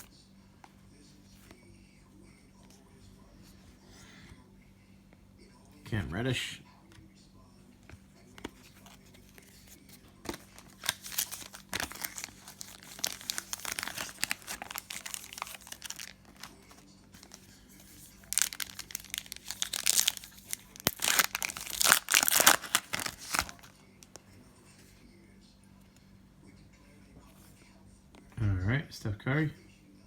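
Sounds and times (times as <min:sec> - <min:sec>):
plastic wrappers crinkling and tearing: 0:08.8 - 0:24.2.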